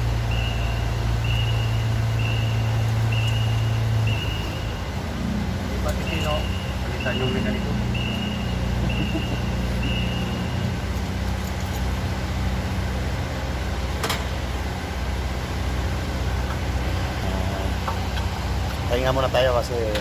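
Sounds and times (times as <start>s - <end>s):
diesel engine misfiring: 0.0s - 20.0s
high beeping: 0.3s - 5.0s, 5.7s - 10.9s.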